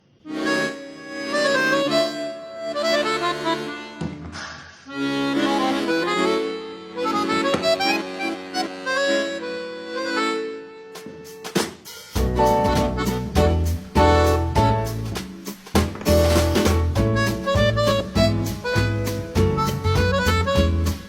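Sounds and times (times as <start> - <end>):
instrumental background music: 0.3 - 21.0.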